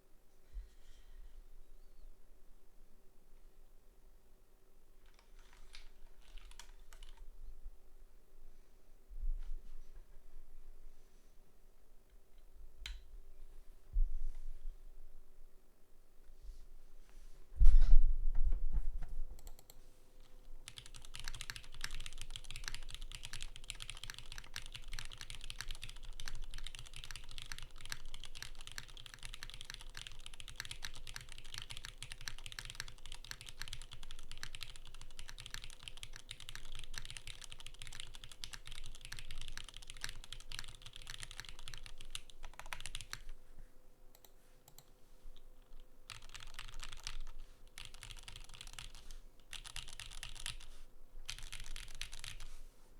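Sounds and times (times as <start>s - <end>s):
fast typing on mechanical keyboard: 5.1s - 7.2s, 20.7s - 43.4s, 45.7s - 50.7s, 51.3s - 52.5s.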